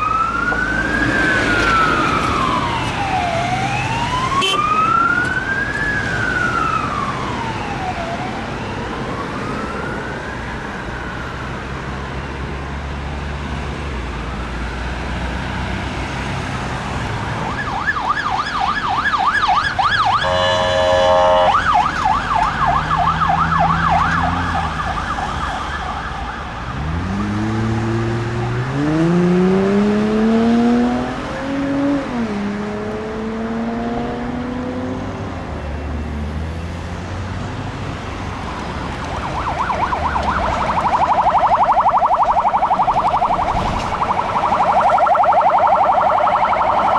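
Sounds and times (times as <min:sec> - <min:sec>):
slow wailing siren: 0:00.0 - 0:12.5, 0:17.0 - 0:34.9, 0:38.3 - 0:46.9
vehicle horn blast: 0:04.4 - 0:04.6, 0:20.2 - 0:21.6
fast yelping siren: 0:17.3 - 0:26.5, 0:38.9 - 0:46.9
engine revving: 0:26.7 - 0:35.2.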